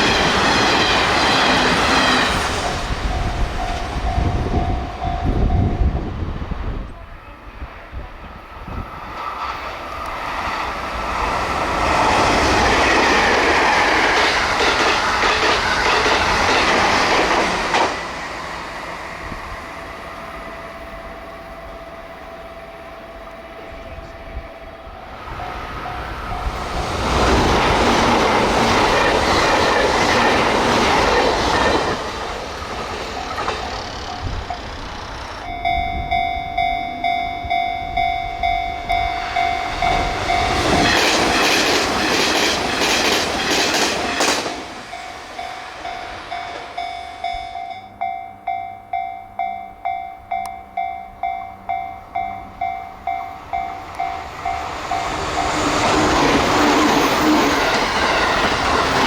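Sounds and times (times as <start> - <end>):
wheels clacking over rail joints: 0.0 - 4.2, 9.0 - 24.2, 25.1 - 35.8, 38.4 - 48.2, 49.8 - 59.0
level crossing warning bell: 0.0 - 6.3, 19.2 - 59.0
electric trains passing: 0.0 - 59.0.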